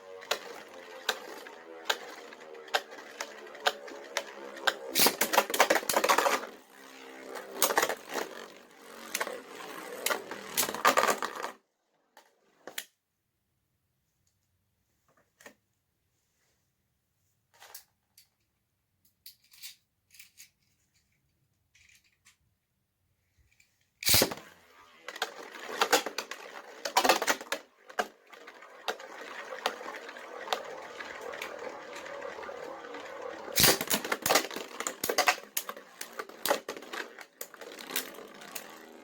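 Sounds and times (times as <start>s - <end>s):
spinning tops clashing: 0.0s - 11.3s, 24.0s - 39.0s
spinning top launch clack: 0.0s - 11.5s, 24.0s - 39.0s
spinning tops whirring: 0.0s - 11.6s, 24.0s - 39.0s.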